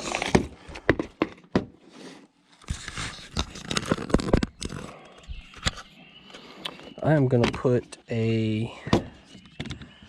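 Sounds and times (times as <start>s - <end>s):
scraping and rustling: 0.0s - 5.9s.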